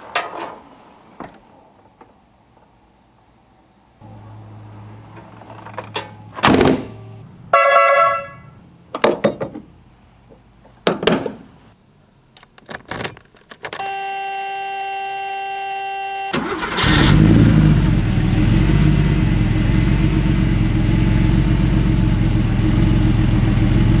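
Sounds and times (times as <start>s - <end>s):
knocks and clunks: 5.1s - 7.1s, 8.9s - 11.6s
steady buzzer: 13.8s - 16.4s
car engine starting and idling: 16.2s - 24.0s.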